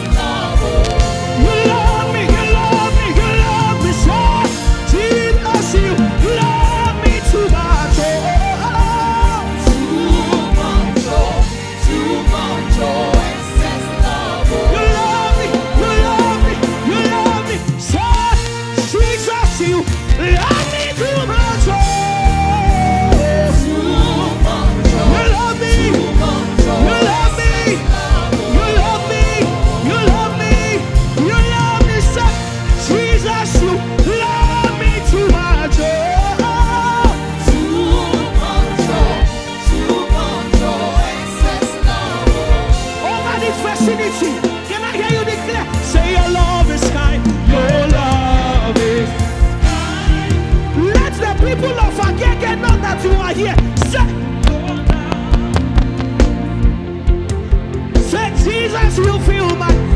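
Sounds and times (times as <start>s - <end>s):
live gospel band music: 0.0s - 59.9s
steady drum beat: 0.0s - 59.9s.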